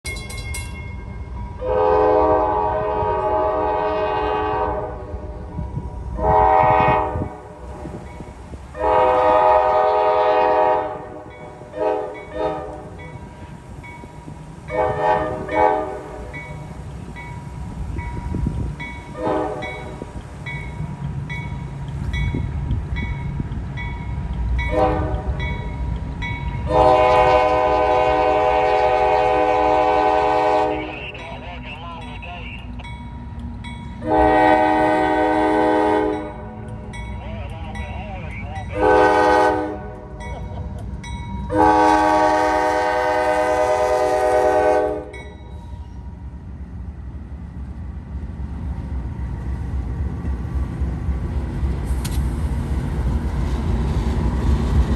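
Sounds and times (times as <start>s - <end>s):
locomotive air horn blasts: 1.6s - 5.3s, 6.2s - 7.6s, 8.8s - 13.0s, 14.7s - 16.3s, 19.1s - 19.9s, 24.7s - 25.4s, 26.7s - 31.2s, 34.0s - 36.6s, 38.8s - 40.1s, 41.5s - 45.2s
diesel engines rumbling: 1.7s - 44.6s.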